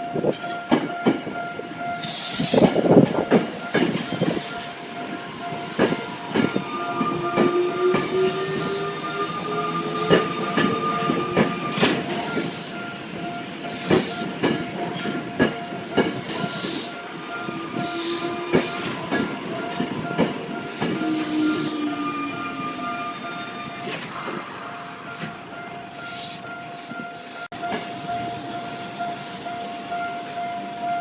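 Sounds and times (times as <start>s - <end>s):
level crossing warning bell ringing: 0.0s - 31.0s
train wheels clacking on rail joints: 0.3s - 22.8s
train motor whine rising: 5.6s - 12.8s, 20.7s - 25.3s.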